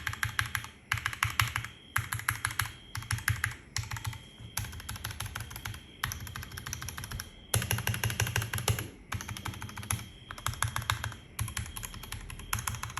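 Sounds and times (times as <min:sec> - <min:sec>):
mechanical keyboard typing: 0:00.0 - 0:12.9.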